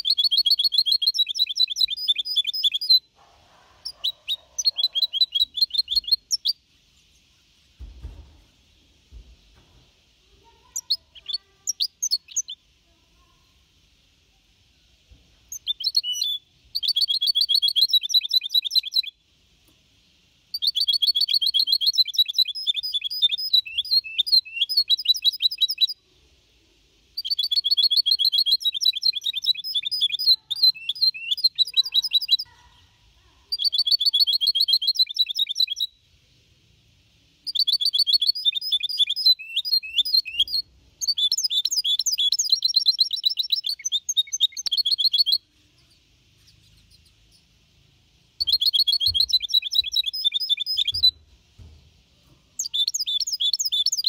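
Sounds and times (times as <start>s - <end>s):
bird twittering song: 0.0s - 3.1s, 3.8s - 8.3s, 10.6s - 12.6s, 15.5s - 19.2s, 20.5s - 26.0s, 27.2s - 32.5s, 33.5s - 36.0s, 37.4s - 47.6s, 48.4s - 51.7s, 52.6s - 54.0s.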